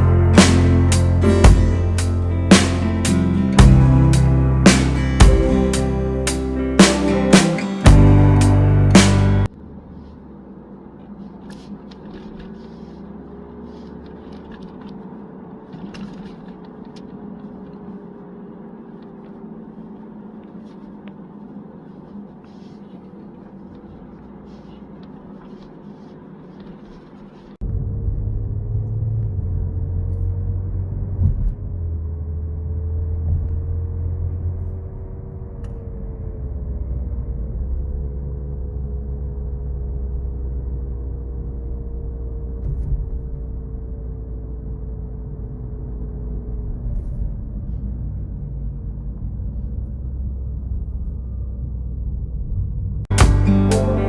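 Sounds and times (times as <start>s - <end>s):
car road rumble: 0.0s - 16.3s, 27.6s - 54.0s.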